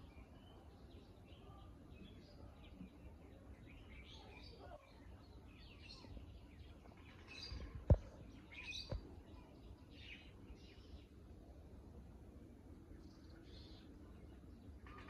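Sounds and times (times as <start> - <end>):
birds chirping: 0.0 - 11.2.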